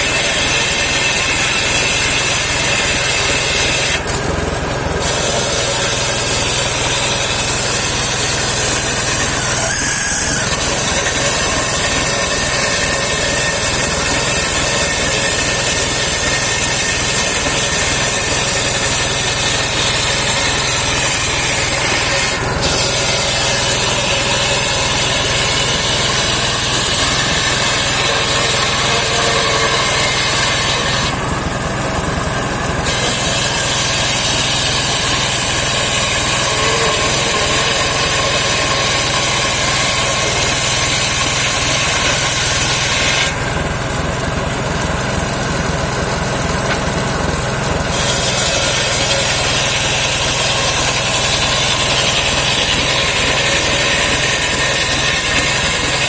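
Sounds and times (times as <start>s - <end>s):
saw blade cutting wood hiss: 0.0s - 4.1s, 5.0s - 31.2s, 32.8s - 43.4s
sawmill engine running: 0.0s - 56.0s.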